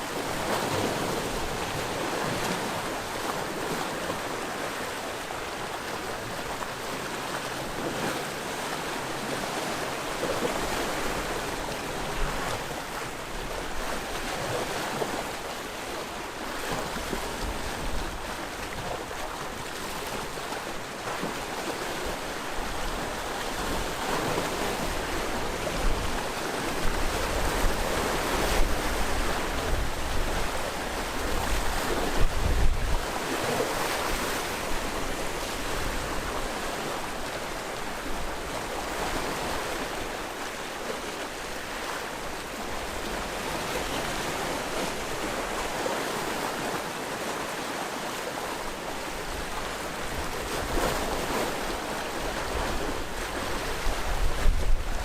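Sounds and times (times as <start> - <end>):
sea waves washing ashore: 0.0 - 55.0
wind buffeting microphone: 25.0 - 33.1.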